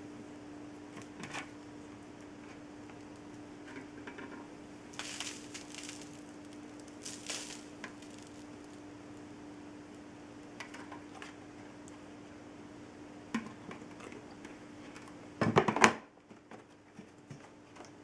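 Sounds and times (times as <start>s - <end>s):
steady low hum: 0.0s - 15.4s
rustling scrapes: 5.0s - 6.3s, 6.9s - 8.5s.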